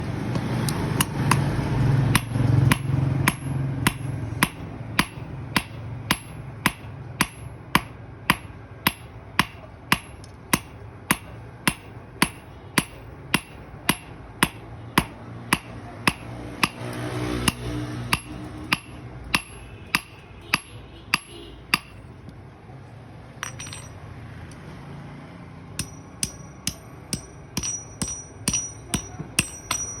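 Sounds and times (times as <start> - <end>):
hammer striking steel on anvil: 0.9 - 1.5, 2.1 - 22.1, 23.4 - 24.0, 25.8 - 30.0.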